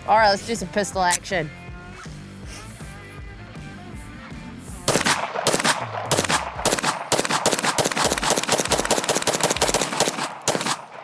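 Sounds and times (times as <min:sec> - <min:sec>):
rapid gunfire: 0:04.9 - 0:11.0.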